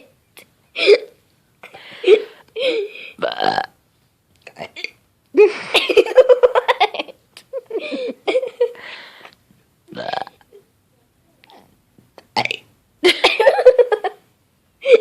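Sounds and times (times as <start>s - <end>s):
person burping: 3.2s - 3.8s, 4.5s - 5.0s, 9.9s - 10.6s, 12.2s - 12.6s.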